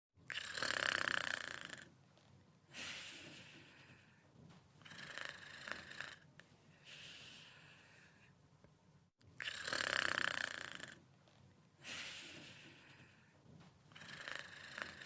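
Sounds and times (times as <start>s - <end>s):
person snoring: 0.3s - 1.9s, 4.8s - 7.9s, 9.4s - 11.0s, 13.9s - 15.0s.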